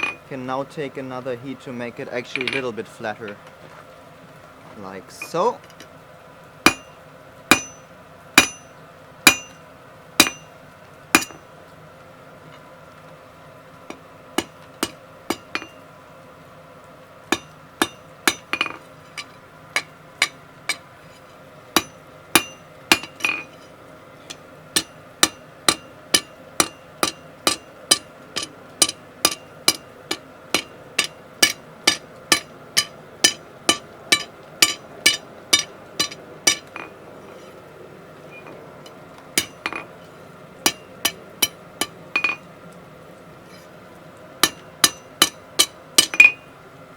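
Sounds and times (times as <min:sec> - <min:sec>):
hammer striking steel on anvil: 0:06.6 - 0:08.7, 0:09.3 - 0:09.6, 0:10.2 - 0:10.5, 0:11.2 - 0:11.4, 0:14.4 - 0:15.8, 0:17.3 - 0:20.8, 0:21.8 - 0:23.6, 0:24.3 - 0:36.9, 0:39.4 - 0:39.9, 0:40.6 - 0:42.4, 0:44.4 - 0:46.5
anvil ringing: 0:06.7 - 0:06.9, 0:07.5 - 0:08.7, 0:09.3 - 0:09.6, 0:10.2 - 0:10.5, 0:11.2 - 0:11.4, 0:14.4 - 0:15.8, 0:17.3 - 0:20.8, 0:21.8 - 0:23.5, 0:24.8 - 0:36.9, 0:39.4 - 0:39.9, 0:40.7 - 0:42.4, 0:44.4 - 0:46.5.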